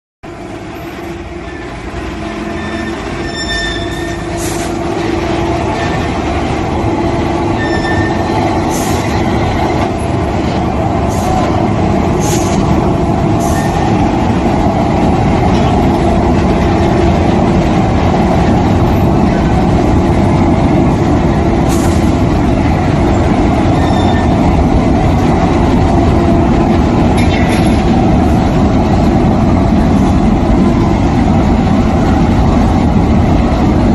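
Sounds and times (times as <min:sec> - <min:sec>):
furnace machinery rumble: 0:04.3 - 0:33.9.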